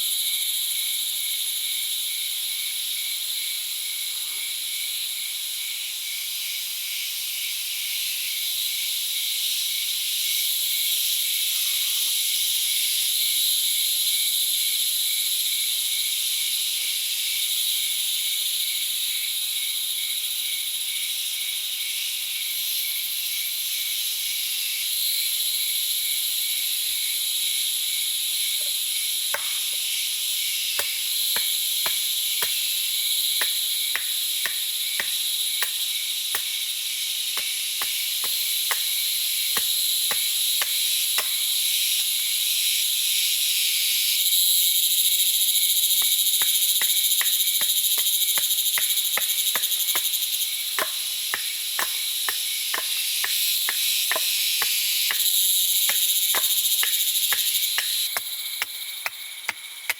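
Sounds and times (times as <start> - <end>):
insects droning: 0.0 - 59.9
sharp ticks: 37.4 - 38.9, 50.8 - 59.9.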